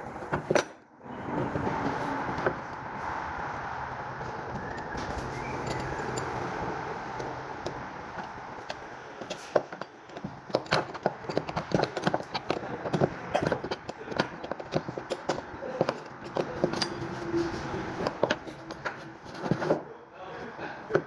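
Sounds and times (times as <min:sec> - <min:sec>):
metal parts clicking and knocking: 0:04.5 - 0:19.8.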